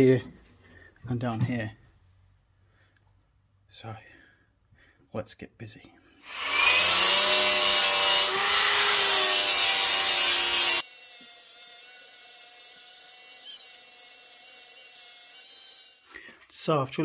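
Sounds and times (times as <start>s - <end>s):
belt sander grinding metal: 6.2s - 16.1s.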